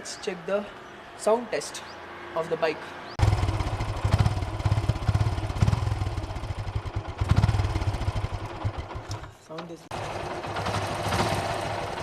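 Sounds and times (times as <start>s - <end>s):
motorcycle engine running: 3.2s - 12.0s.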